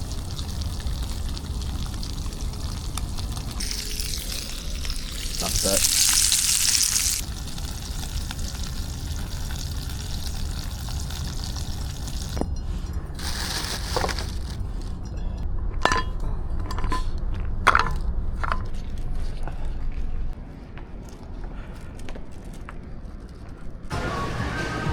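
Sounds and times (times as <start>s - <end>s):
steak sizzling on a grill: 0.0s - 12.4s
low rumble: 7.3s - 20.4s.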